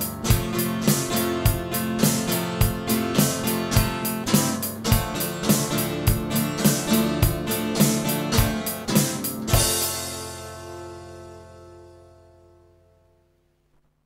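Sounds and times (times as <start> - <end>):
rock band playing: 0.0 - 11.1
ringing guitar chord: 0.0 - 13.4.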